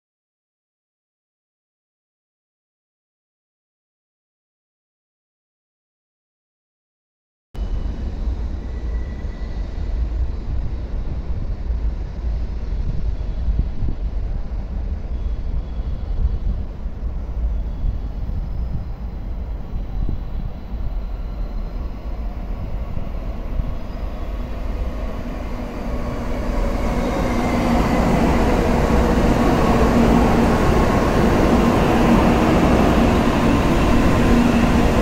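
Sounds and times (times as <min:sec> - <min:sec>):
train running on track: 0:07.6 - 0:35.0
faint rising whine: 0:17.0 - 0:35.0.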